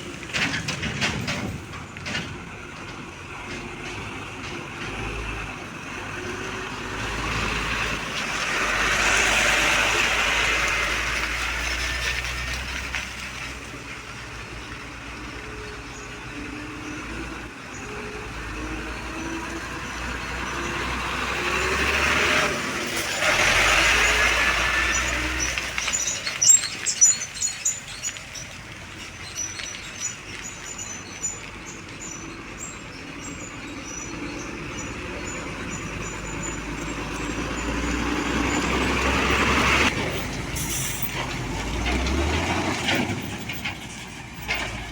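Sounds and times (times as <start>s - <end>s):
sharp knocks and rattles: 0.0s - 6.2s
truck engine running: 0.0s - 44.9s.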